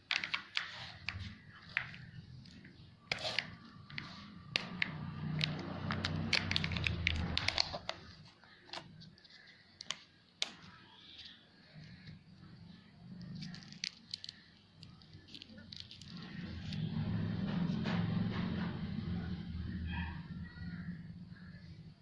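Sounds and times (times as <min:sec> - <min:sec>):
sharp plastic clicks: 0:03.4 - 0:12.2
packaging crinkling and tearing: 0:05.4 - 0:10.0, 0:13.2 - 0:16.9.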